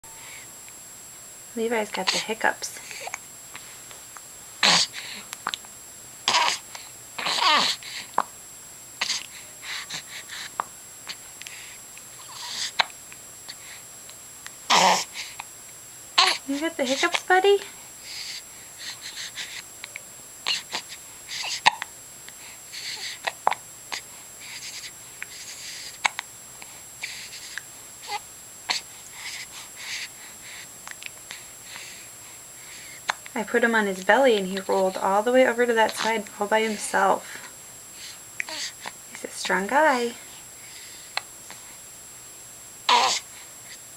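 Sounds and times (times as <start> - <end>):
baby breathing: 2.0 - 3.9, 4.6 - 5.4, 6.3 - 8.2, 9.0 - 12.9, 14.7 - 15.5, 16.2 - 19.6, 20.5 - 21.7, 22.4 - 33.2, 35.9 - 39.0, 40.2 - 41.8, 42.9 - 43.8
baby hiccupping: 4.6 - 5.6, 6.3 - 8.3, 14.7 - 15.1, 16.2 - 16.4, 20.5 - 21.9, 42.9 - 43.2
baby hiccuping: 6.3 - 6.6, 14.7 - 15.1, 42.9 - 43.2
baby whiny vocal sound: 6.3 - 6.6, 7.2 - 8.2, 14.7 - 15.2, 16.2 - 16.5, 38.4 - 38.8, 42.9 - 43.3.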